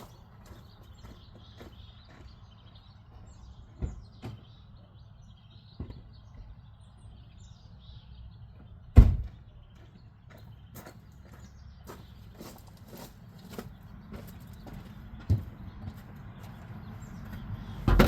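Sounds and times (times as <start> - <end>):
loud thud: 9.0 - 9.4.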